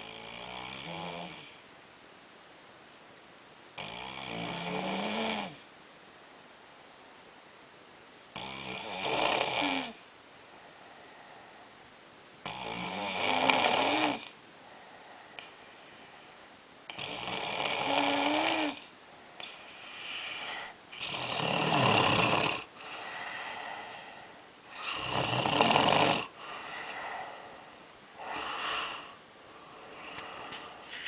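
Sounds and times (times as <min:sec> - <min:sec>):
person snoring: 0:00.0 - 0:01.6, 0:03.8 - 0:05.6, 0:08.4 - 0:10.0, 0:12.4 - 0:14.3, 0:16.9 - 0:29.2
soft breaths: 0:09.9 - 0:12.3, 0:13.8 - 0:17.2, 0:17.9 - 0:31.0.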